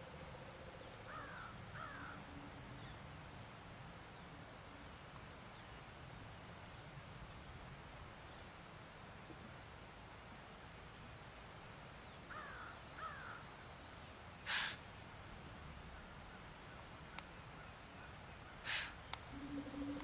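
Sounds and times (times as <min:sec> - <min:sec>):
deer snorting: 0:14.5 - 0:14.8, 0:18.6 - 0:20.0.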